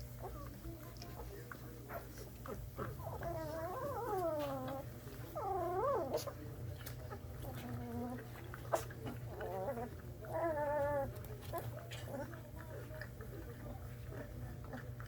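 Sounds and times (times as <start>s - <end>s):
puppies whining and crying: 0.0s - 1.3s, 2.4s - 6.4s, 7.1s - 12.9s.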